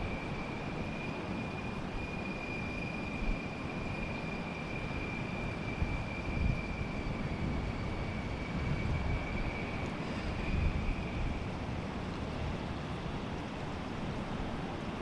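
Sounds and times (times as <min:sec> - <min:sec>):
faint thin whine: 0:00.0 - 0:13.4
wind buffeting microphone: 0:05.2 - 0:15.0.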